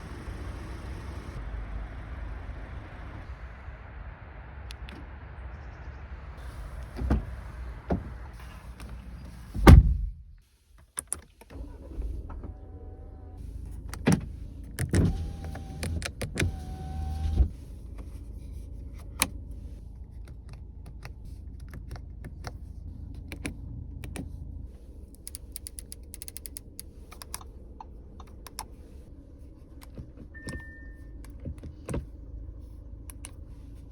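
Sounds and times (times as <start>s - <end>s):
outside rumble: 0.0s - 10.5s, 11.4s - 33.9s
car door shutting: 6.6s - 10.1s, 29.9s - 32.1s
power window motor whine: 15.0s - 17.5s.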